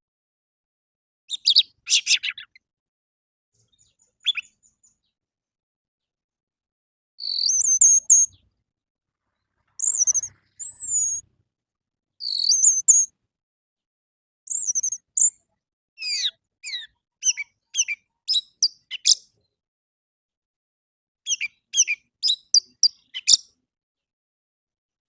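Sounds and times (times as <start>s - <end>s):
thrush singing whistled phrases: 7.2s - 8.4s, 9.8s - 11.2s, 12.2s - 13.1s, 14.5s - 15.3s.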